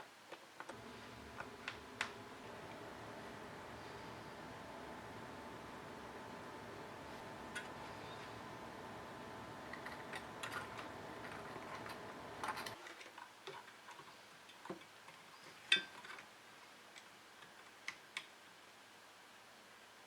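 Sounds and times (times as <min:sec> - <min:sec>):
steady hum: 0:00.7 - 0:12.8.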